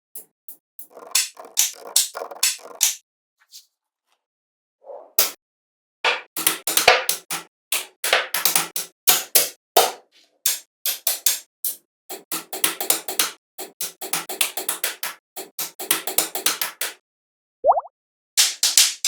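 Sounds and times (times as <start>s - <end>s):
sharp clicks and taps: 0.2s - 3.0s.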